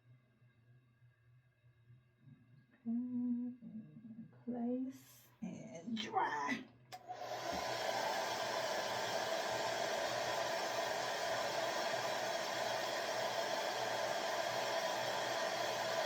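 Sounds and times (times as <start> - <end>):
hair dryer blowing: 6.9 - 16.0.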